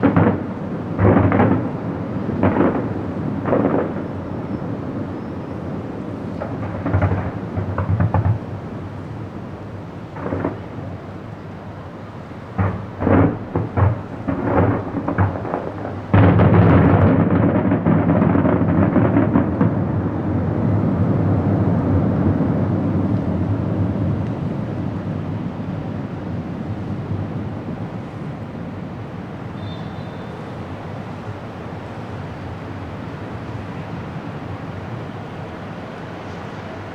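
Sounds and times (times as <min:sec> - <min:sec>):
firework shells booming: 0:00.0 - 0:09.1, 0:10.1 - 0:11.4, 0:12.5 - 0:20.4.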